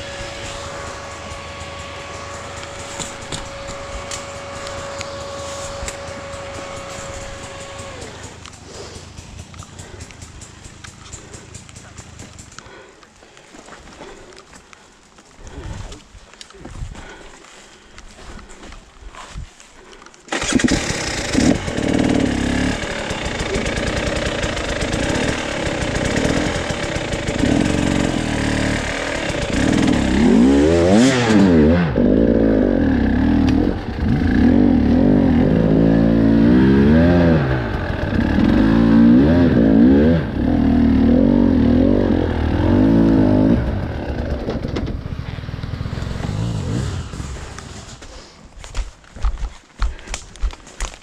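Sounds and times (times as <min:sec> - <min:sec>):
dirt bike engine revving: 0:00.0 - 0:12.9, 0:20.3 - 0:48.1.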